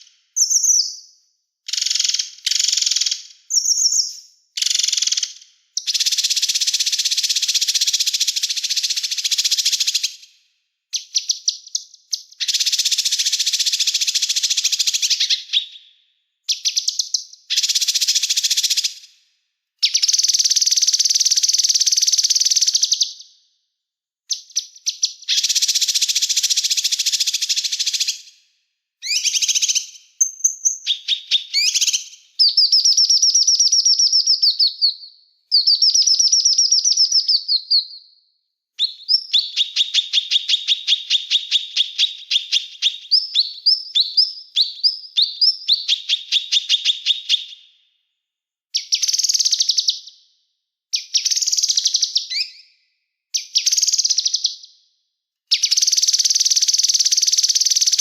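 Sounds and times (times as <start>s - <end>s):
songbird trilling: 0.0s - 1.1s, 1.7s - 10.0s, 51.0s - 52.6s.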